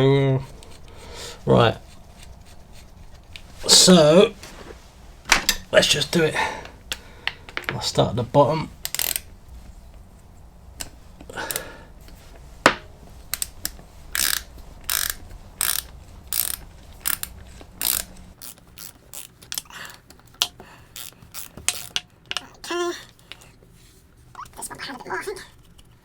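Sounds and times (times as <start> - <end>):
ratchet wrench clicking: 8.8 - 9.3, 12.7 - 19.7, 20.4 - 22.4.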